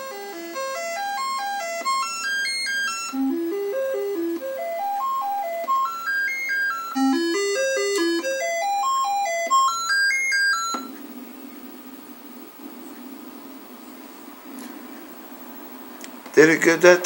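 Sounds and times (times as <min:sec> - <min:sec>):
electronic beeping notes: 0:00.0 - 0:11.0.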